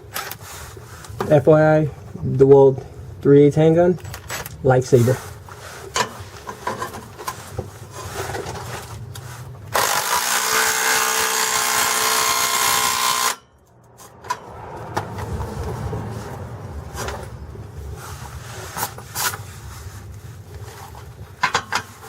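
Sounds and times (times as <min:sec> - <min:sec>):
impact wrench running: 0:09.7 - 0:13.4.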